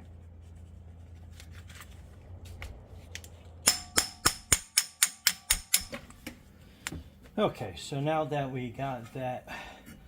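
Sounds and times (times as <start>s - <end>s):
hammer striking impact driver: 3.6s - 6.1s.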